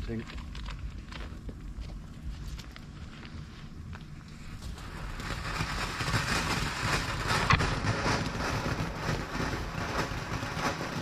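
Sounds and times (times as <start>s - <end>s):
firework fountain hissing: 4.4s - 11.0s.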